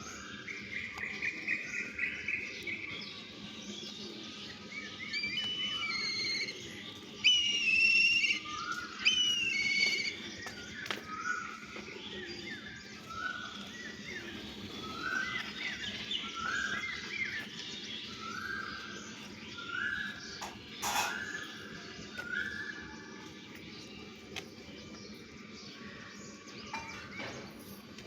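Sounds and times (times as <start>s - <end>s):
birds whistling: 0.0s - 28.0s
soft bird chirps: 0.0s - 28.0s
bird trilling: 4.7s - 23.2s.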